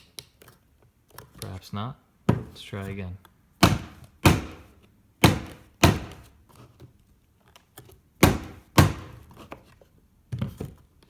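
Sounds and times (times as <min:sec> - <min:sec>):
puzzle box knocking on a surface: 0:02.3 - 0:02.6.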